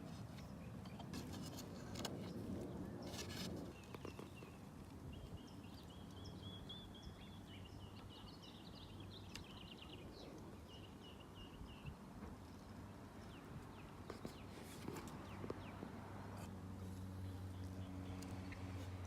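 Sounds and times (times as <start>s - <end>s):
small bird chirping trills: 0.0s - 16.0s
outdoor background noise: 0.0s - 19.0s.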